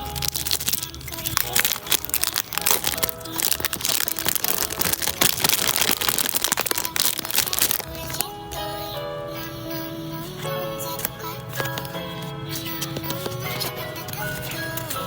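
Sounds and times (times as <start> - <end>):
gift packaging crinkling: 0.0 - 8.7, 10.9 - 15.0
background music: 0.0 - 15.0.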